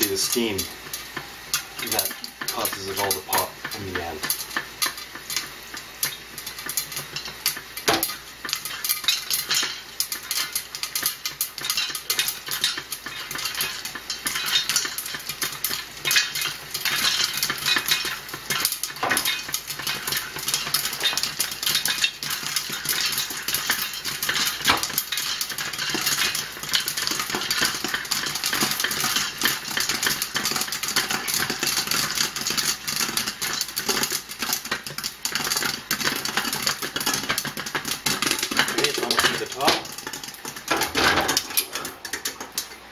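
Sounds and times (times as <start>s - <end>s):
metal pot and lid rattling: 0.0s - 42.9s
popcorn popping in a pot: 0.0s - 42.9s.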